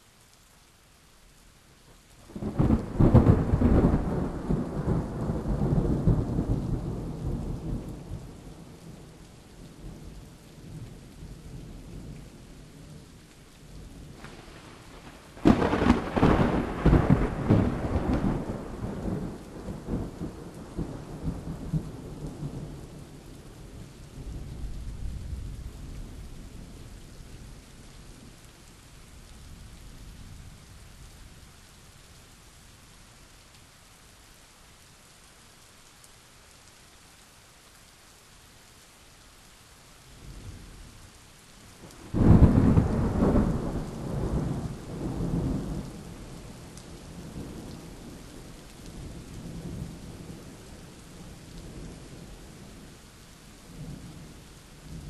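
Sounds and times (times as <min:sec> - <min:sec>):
rain hissing: 0:00.0 - 0:55.0
thunder claps and rumble: 0:02.3 - 0:10.9, 0:14.0 - 0:23.2, 0:41.8 - 0:50.6.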